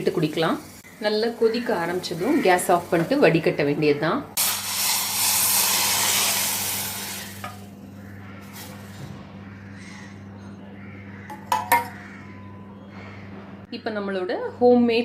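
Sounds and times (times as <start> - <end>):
drink boiling hard in a pan: 4.4 - 7.7.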